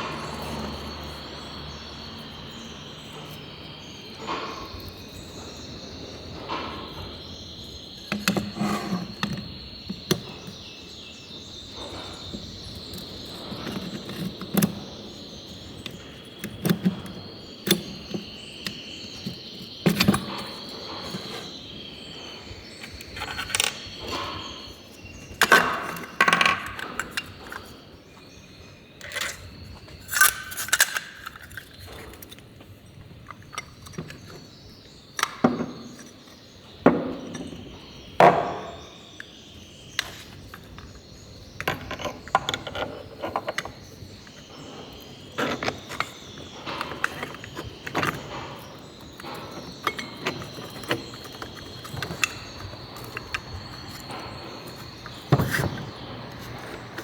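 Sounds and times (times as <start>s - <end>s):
crickets chirping: 0.0s - 57.0s
metal tools clinking: 11.5s - 21.6s, 22.8s - 28.3s, 29.0s - 34.5s, 35.2s - 57.0s.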